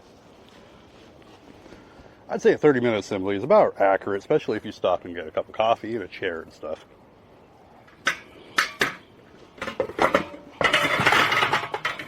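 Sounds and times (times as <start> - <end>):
metal parts rattling clatter: 9.7 - 12.0.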